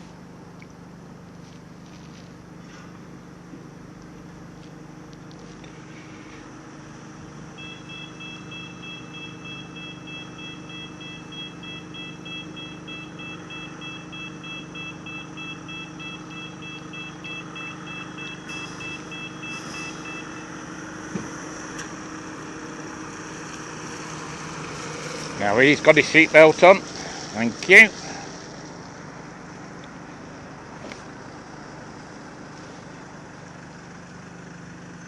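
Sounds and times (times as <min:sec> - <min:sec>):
engine idling: 0:00.0 - 0:35.0
electronic warning beeper: 0:07.6 - 0:20.5.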